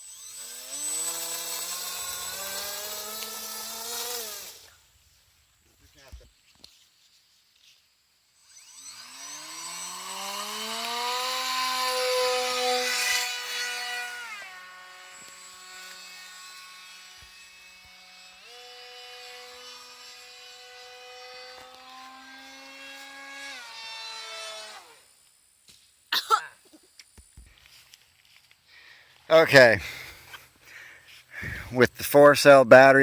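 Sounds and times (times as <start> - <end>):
electric motor propeller whine: 0.0 - 4.7, 8.4 - 25.2.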